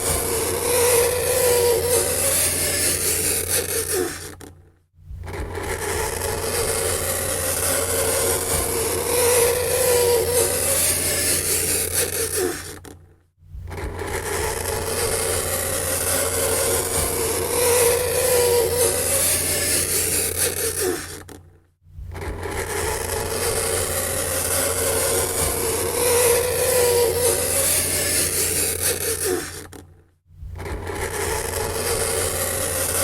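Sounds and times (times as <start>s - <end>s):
fingernails scraping chalkboard: 22.5s - 29.8s.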